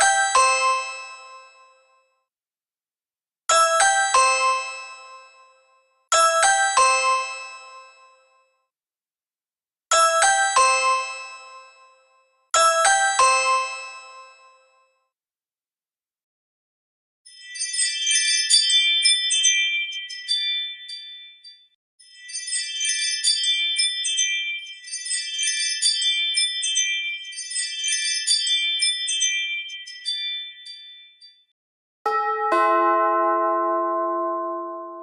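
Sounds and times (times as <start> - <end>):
tinkling bell-like chime: 17.3 - 35.0.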